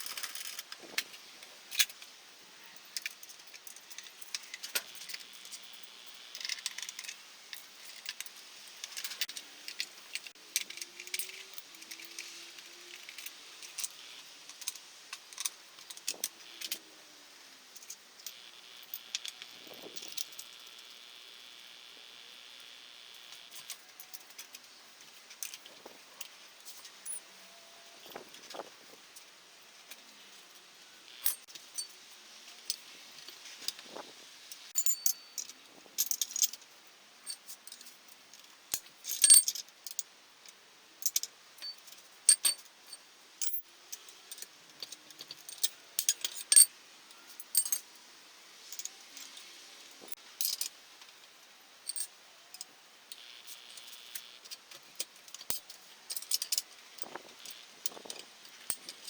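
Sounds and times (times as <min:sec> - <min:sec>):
metal tools clinking: 0:34.8 - 0:36.6, 0:38.8 - 0:39.6, 0:41.0 - 0:42.6, 0:55.4 - 0:59.0.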